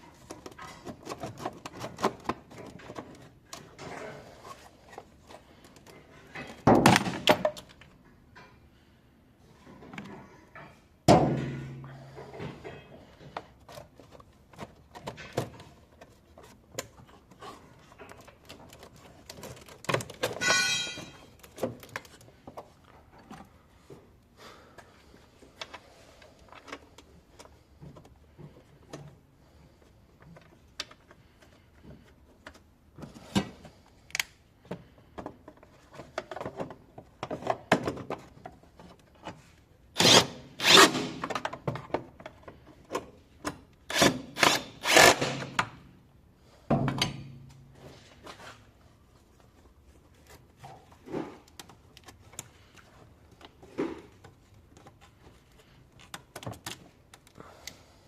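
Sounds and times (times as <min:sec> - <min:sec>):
hand tools clinking: 0:20.3 - 0:21.4
high ringing sound: 0:20.4 - 0:21.2.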